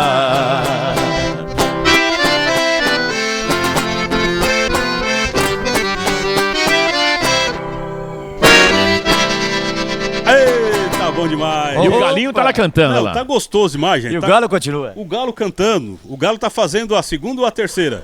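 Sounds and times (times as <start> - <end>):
strummed and plucked guitar: 0.0 - 12.2
accordion: 0.0 - 13.2.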